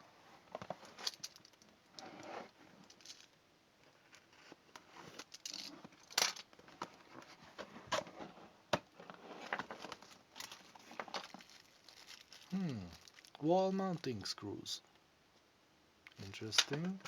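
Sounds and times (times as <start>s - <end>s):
cardboard and packaging rustling: 4.0s - 13.4s
plastic parts clicking and knocking: 16.2s - 17.0s.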